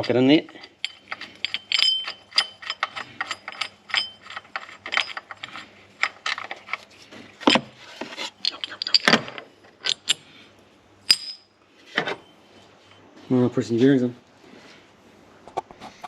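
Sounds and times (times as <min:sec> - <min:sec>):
metal tools clinking: 0:00.0 - 0:06.9, 0:08.2 - 0:10.2, 0:11.1 - 0:12.3.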